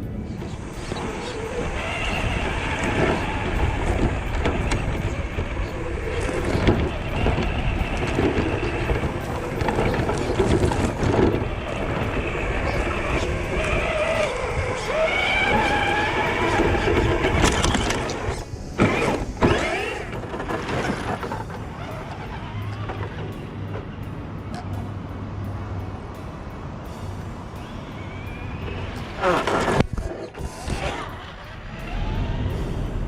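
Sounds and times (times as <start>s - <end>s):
toy car rumbling: 0.0s - 24.8s, 27.9s - 33.0s
electric motor whining: 0.4s - 23.1s.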